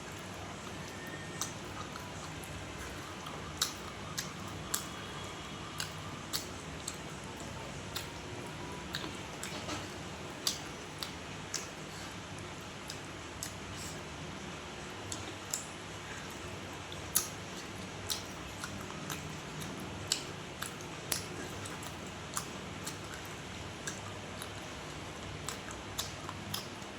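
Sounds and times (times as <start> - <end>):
person chewing food: 0.0 - 14.2, 14.9 - 26.9.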